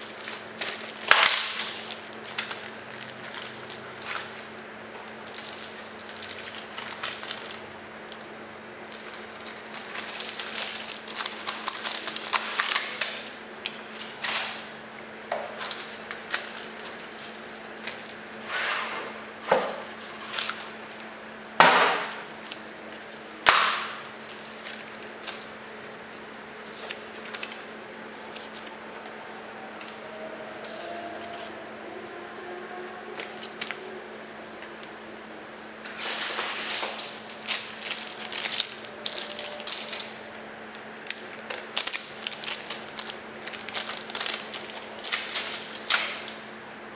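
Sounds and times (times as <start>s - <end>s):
packaging rustling and clicking: 35.9s - 40.2s, 41.0s - 46.4s.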